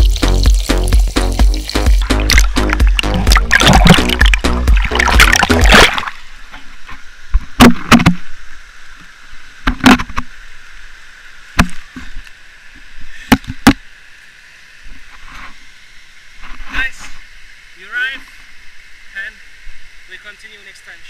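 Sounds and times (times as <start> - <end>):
steady hiss: 0.0 - 3.2, 5.5 - 21.0
background music: 0.0 - 6.0.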